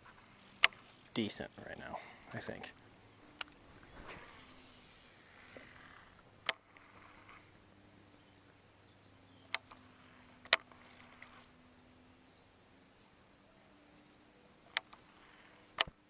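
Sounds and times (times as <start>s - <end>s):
faint steady hum: 0.0s - 16.0s
sharp clicks: 0.4s - 6.9s, 9.4s - 11.5s, 14.6s - 16.0s.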